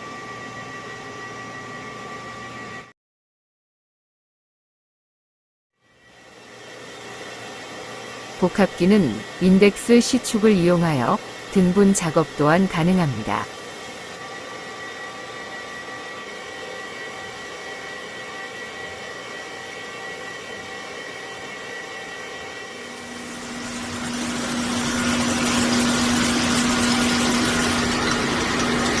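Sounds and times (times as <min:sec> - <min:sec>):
machine whine: 0:00.0 - 0:02.9, 0:05.8 - 0:29.0
low hum: 0:22.8 - 0:29.0.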